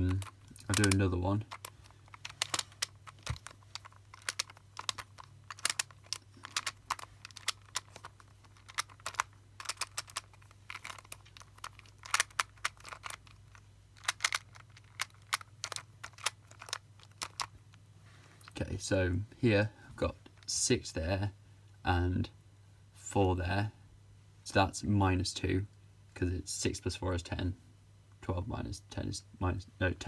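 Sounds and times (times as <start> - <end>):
sharp plastic clicks: 0.0 - 17.5
faint low hum: 0.0 - 30.0.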